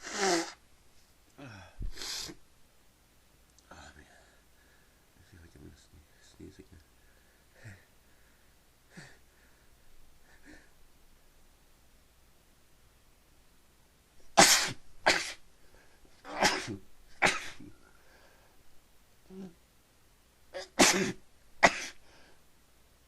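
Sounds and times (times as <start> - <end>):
short breaths: 1.4 - 2.4, 4.2 - 5.1, 17.8 - 18.6
person sneezing: 14.4 - 15.4, 16.2 - 17.7, 20.6 - 22.0.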